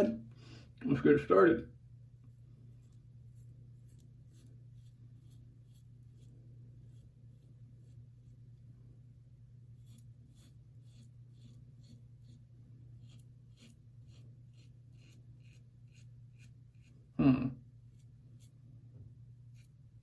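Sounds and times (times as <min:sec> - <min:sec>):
razor scraping stubble: 0:02.2 - 0:08.4, 0:09.8 - 0:17.1, 0:17.8 - 0:18.6, 0:19.4 - 0:20.0.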